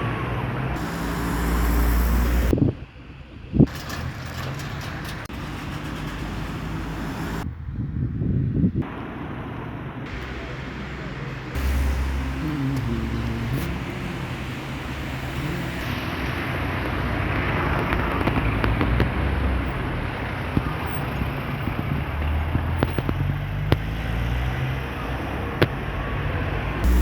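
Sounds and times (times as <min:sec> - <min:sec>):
vehicle engine running: 0:00.0 - 0:02.6, 0:10.1 - 0:27.0
road noise: 0:00.0 - 0:27.0.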